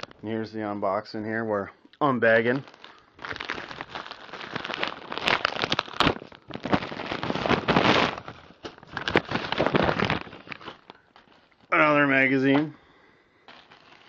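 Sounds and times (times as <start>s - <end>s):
packaging bag crinkling: 2.3s - 11.7s, 13.5s - 14.0s.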